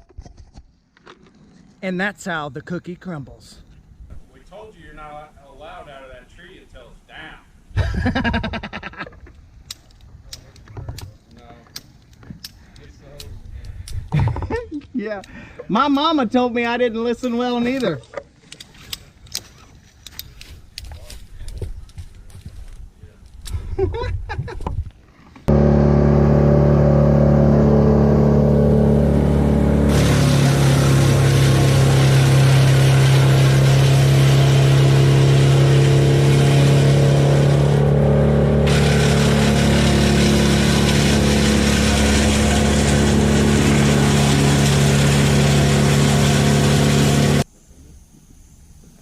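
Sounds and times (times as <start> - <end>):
gas engine running at high speed: 25.5 - 47.4.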